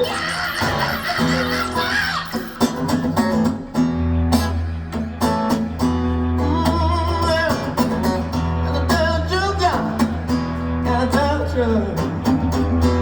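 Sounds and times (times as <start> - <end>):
strummed guitar: 0.0 - 13.0
bass line: 3.6 - 13.0.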